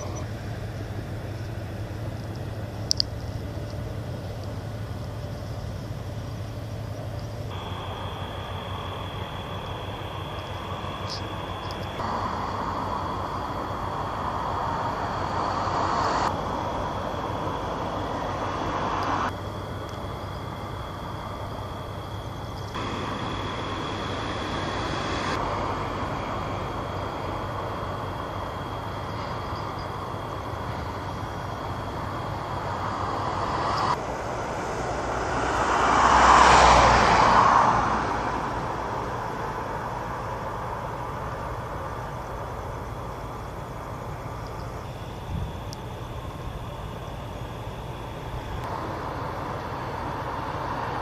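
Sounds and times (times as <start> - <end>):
outdoor background noise: 0.0 - 51.0
vehicle passing close by: 7.5 - 19.4, 22.8 - 42.0, 48.5 - 51.0.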